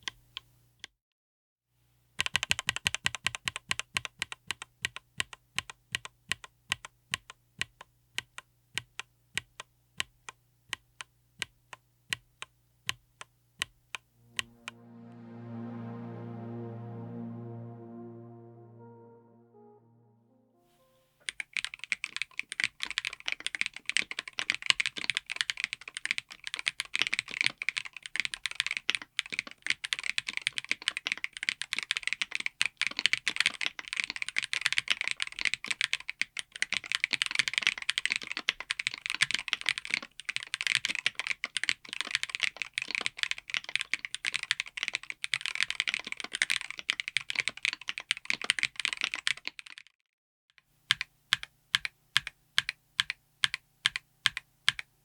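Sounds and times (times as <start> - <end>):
clacky keyboard typing: 2.2 - 13.0, 21.3 - 49.9, 50.9 - 54.9.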